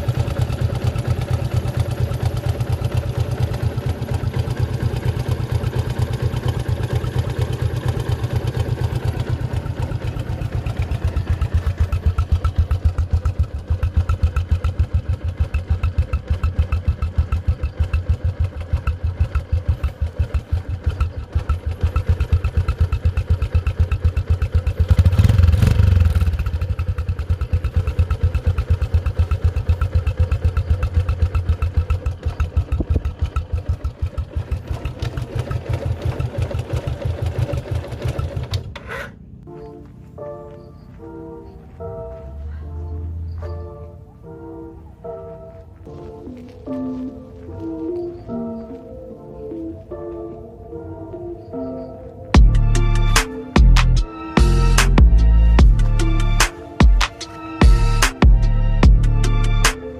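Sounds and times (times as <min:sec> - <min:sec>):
motorcycle engine revving: 0:00.0 - 0:39.8, 0:52.4 - 0:59.9
motorcycle engine idling: 0:00.0 - 0:46.5, 0:52.3 - 0:59.9.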